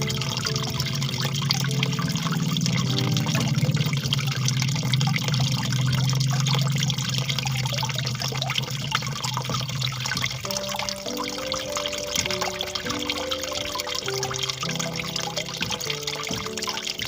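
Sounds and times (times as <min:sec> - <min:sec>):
soft music notes: 0:00.0 - 0:04.4, 0:10.4 - 0:17.0
water trickling and splashing: 0:00.0 - 0:17.0.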